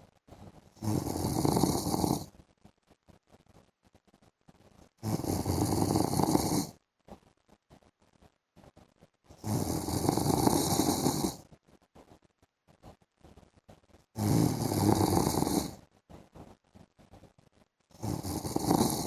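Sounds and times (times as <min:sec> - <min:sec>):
man snoring: 0:00.8 - 0:02.3, 0:05.0 - 0:06.7, 0:09.4 - 0:11.4, 0:14.2 - 0:15.8, 0:18.0 - 0:19.0.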